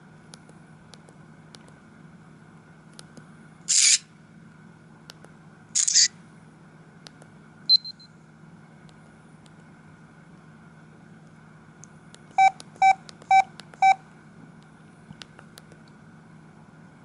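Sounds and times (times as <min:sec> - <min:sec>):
camera shutter click: 0:05.8 - 0:06.1
short high beep: 0:07.7 - 0:08.1, 0:12.4 - 0:14.0.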